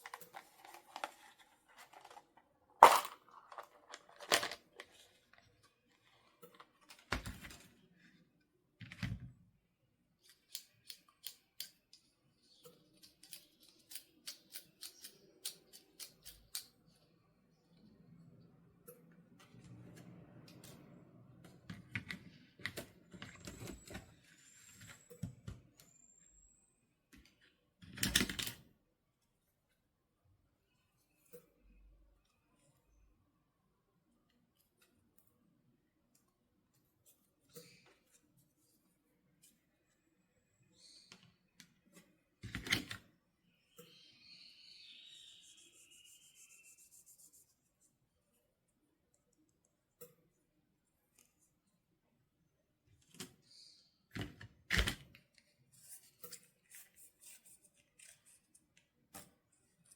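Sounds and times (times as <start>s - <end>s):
plastic toy packaging clicking: 0.0s - 5.0s.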